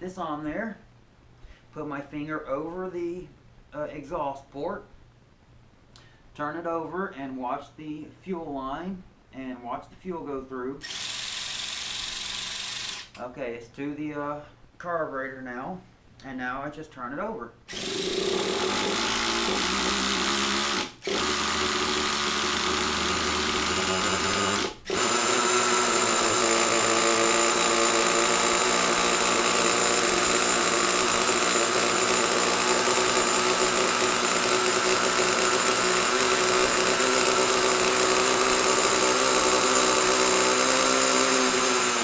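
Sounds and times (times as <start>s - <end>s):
electric starter turning engine: 17.7s - 42.0s.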